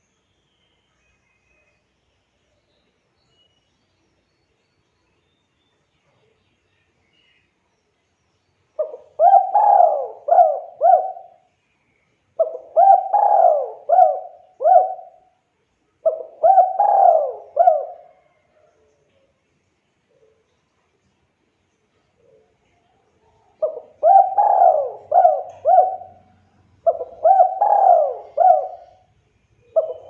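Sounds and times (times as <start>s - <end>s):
dove cooing: 8.8s - 11.5s, 12.4s - 15.3s, 16.0s - 18.4s, 23.6s - 30.0s.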